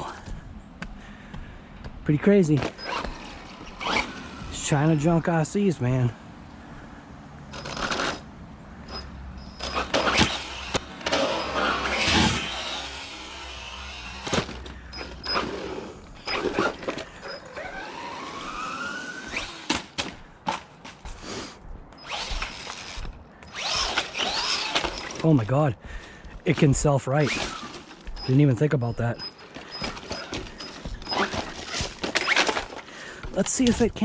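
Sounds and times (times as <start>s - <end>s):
electric toy car motor whining: 2.6s - 5.3s, 7.5s - 20.1s, 22.0s - 25.2s, 27.2s - 32.8s.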